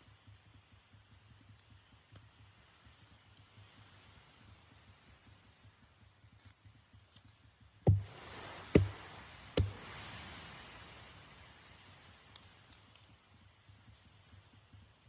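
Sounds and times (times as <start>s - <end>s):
knife striking coconut: 7.9s - 9.9s.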